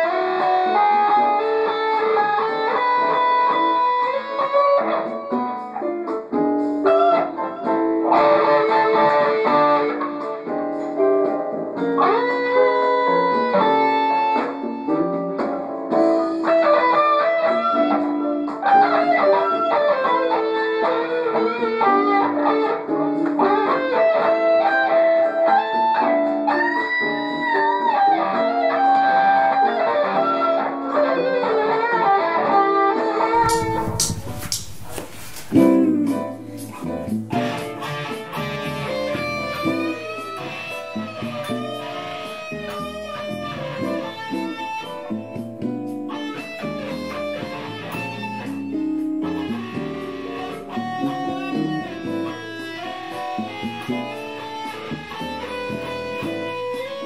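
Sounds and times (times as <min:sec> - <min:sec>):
electric guitar through an amp: 0:00.0 - 0:57.0
sharp loud click: 0:33.4 - 0:35.1
backing track: 0:33.4 - 0:57.0.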